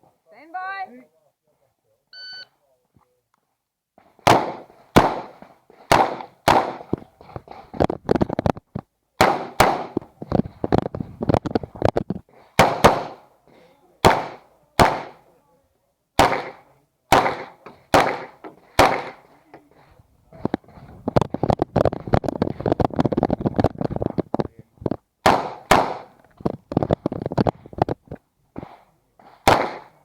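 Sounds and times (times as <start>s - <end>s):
pistol shots: 4.2s - 6.9s, 9.2s - 10.1s, 12.6s - 13.3s, 14.0s - 15.2s, 16.2s - 19.3s, 25.2s - 26.2s, 29.4s - 30.0s.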